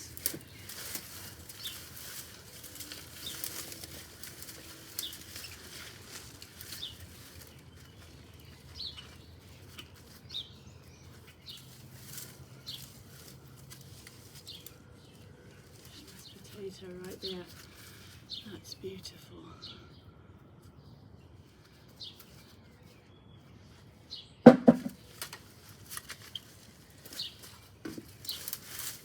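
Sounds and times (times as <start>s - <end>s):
soil rustling and scraping: 0.0s - 18.9s, 24.8s - 29.0s.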